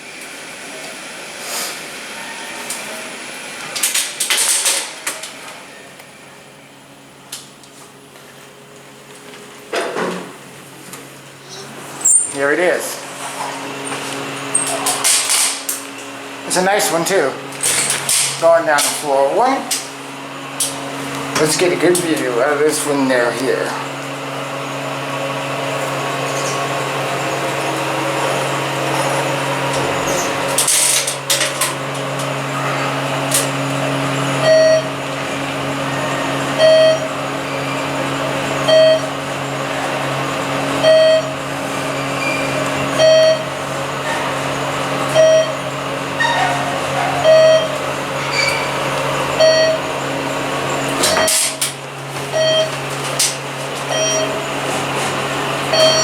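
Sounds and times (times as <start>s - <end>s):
elevator humming: 0.0s - 56.0s
short electronic beep: 34.4s - 34.9s, 36.6s - 37.1s, 38.7s - 39.1s, 40.8s - 41.3s, 43.0s - 43.5s, 45.1s - 45.6s, 47.2s - 47.8s, 49.4s - 49.8s, 52.4s - 52.8s, 53.9s - 54.4s, 55.7s - 56.0s.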